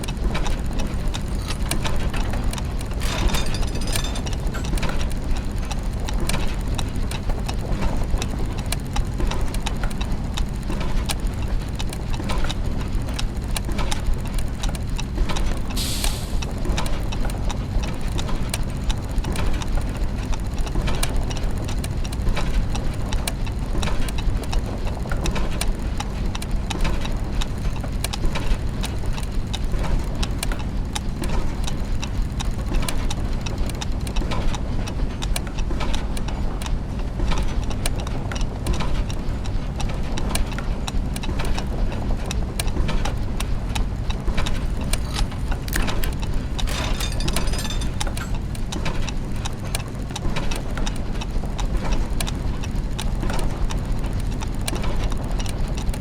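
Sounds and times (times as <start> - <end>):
clockwork gears ticking and clicking: 0.0 - 15.6, 43.7 - 48.6.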